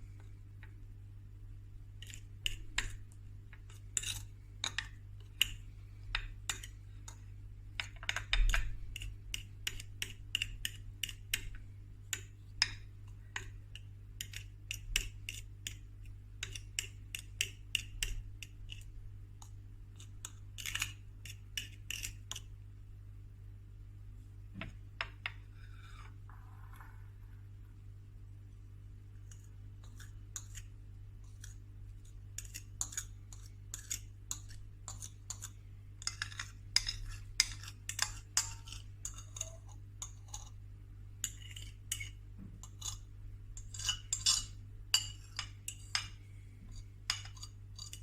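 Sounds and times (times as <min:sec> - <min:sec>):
low steady hum: 0:00.0 - 0:48.0
utensil scraping a dish: 0:02.0 - 0:07.2, 0:20.0 - 0:22.4, 0:25.3 - 0:27.0, 0:29.2 - 0:40.6, 0:41.2 - 0:48.0.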